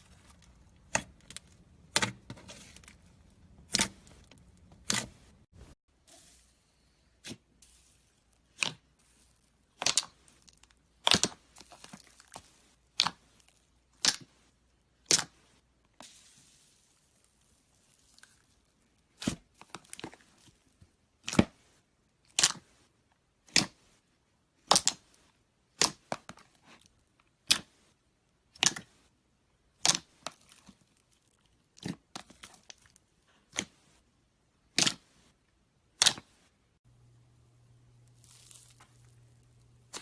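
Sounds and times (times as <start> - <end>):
slime popping and crackling: 8.4 - 14.3, 38.1 - 40.0.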